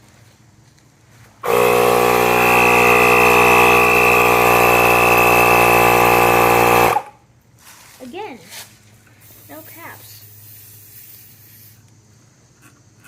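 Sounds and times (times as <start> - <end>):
horn long steady blast: 1.4 - 7.1.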